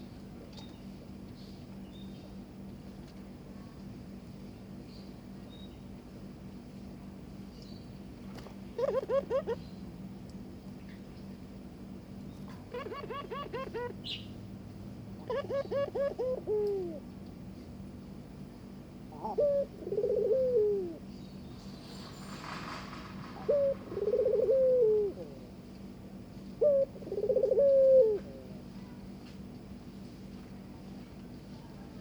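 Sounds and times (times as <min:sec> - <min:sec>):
dove cooing: 0:08.8 - 0:09.7, 0:12.5 - 0:14.2, 0:15.2 - 0:17.1, 0:19.1 - 0:21.1, 0:23.2 - 0:25.5, 0:26.6 - 0:28.6.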